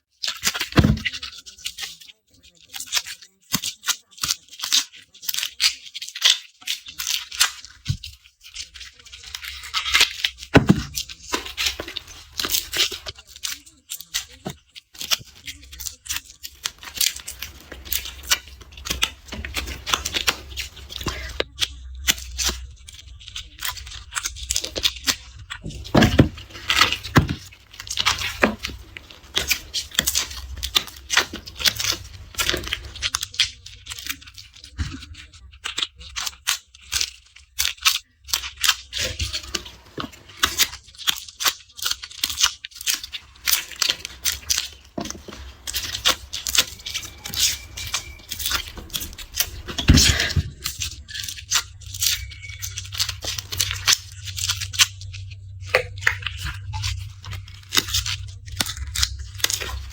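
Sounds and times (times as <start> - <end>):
garlic skins crackling and tearing: 0.2 - 1.9, 2.7 - 59.9.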